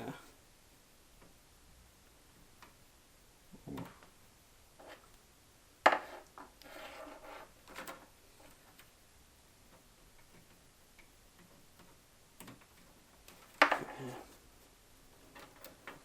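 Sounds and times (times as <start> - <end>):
clicks and knocks of cables: 9.7 - 14.2.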